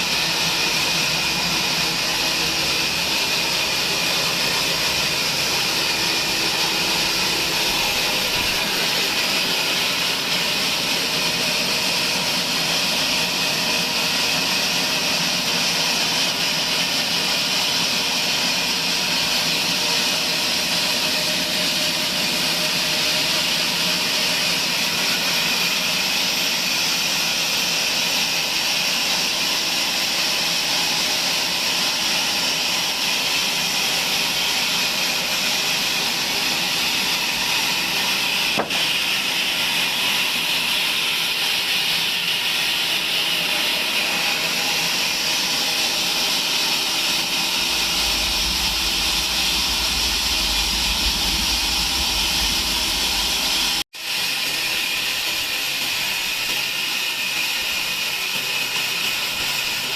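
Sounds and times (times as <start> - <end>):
band saw running: 0.0 - 59.9.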